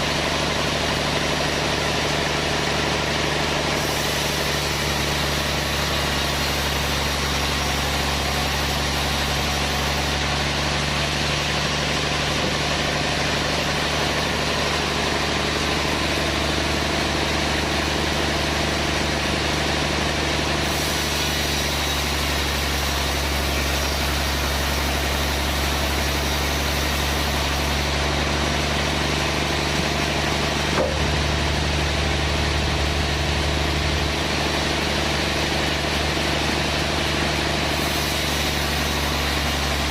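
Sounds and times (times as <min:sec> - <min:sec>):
sawmill machinery humming: 0:00.0 - 0:39.9
brief knock: 0:30.7 - 0:31.2.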